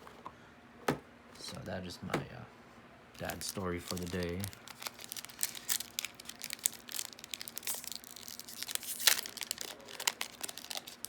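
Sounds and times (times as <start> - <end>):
foil wrappers crinkling and tearing: 3.2 - 11.0.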